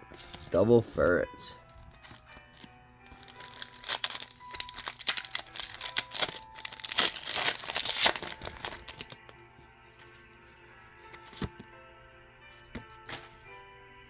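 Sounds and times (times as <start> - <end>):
foil wrapper crinkling and tearing: 1.8 - 9.2.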